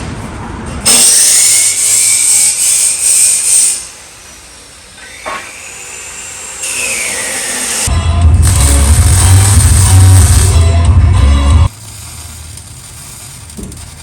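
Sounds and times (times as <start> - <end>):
power tool whirring: 0.9 - 10.7.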